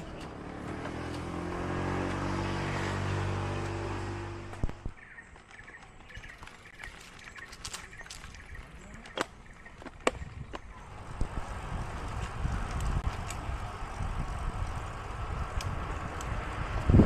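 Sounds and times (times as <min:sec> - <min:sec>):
wind rumbling on microphone: 0:07.2 - 0:17.0.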